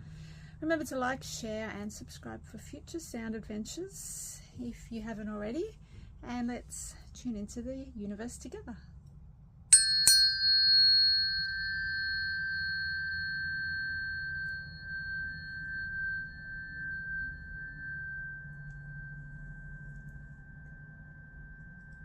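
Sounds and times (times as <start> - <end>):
tuning fork ringing: 9.7 - 22.0.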